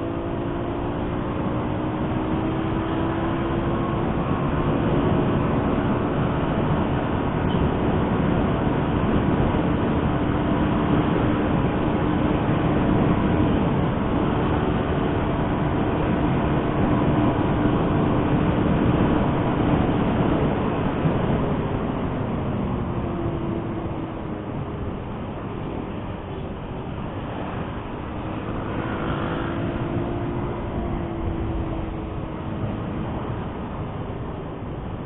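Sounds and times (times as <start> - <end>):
wind and road noise: 0.0 - 35.0
motorcycle engine cruising: 27.1 - 34.5.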